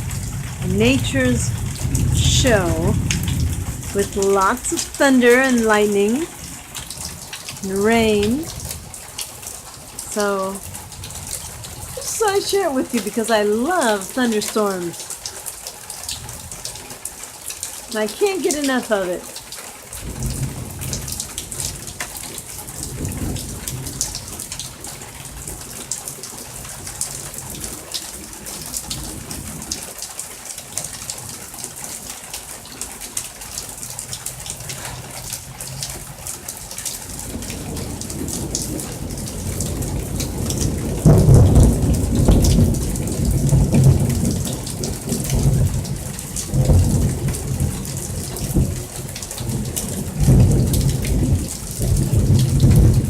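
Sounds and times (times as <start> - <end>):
thunder rumbling: 0.0 - 9.0, 20.0 - 24.7, 37.0 - 53.0
heavy rain falling: 0.0 - 53.0
raindrops ticking on surface: 0.0 - 53.0.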